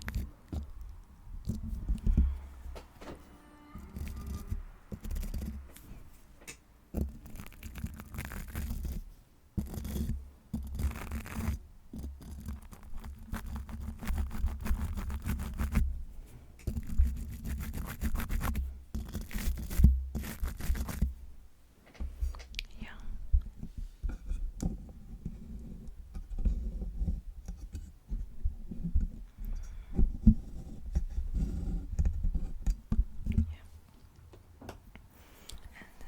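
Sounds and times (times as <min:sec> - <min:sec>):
scratching on a microphone: 0:03.8 - 0:06.0, 0:06.9 - 0:21.2.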